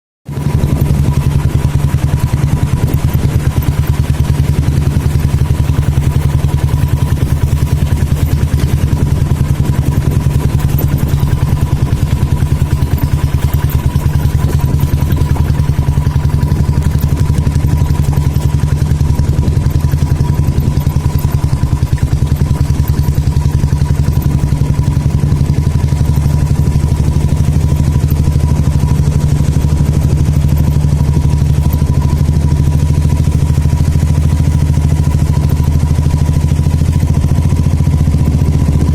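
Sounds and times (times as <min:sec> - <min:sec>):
motorcycle engine running: 0:00.3 - 0:38.9.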